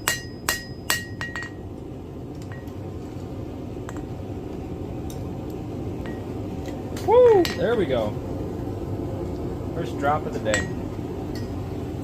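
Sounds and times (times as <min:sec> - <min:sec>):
hammer ringing on anvil: 0:00.0 - 0:01.6, 0:10.5 - 0:10.8
low background hum: 0:00.0 - 0:12.0.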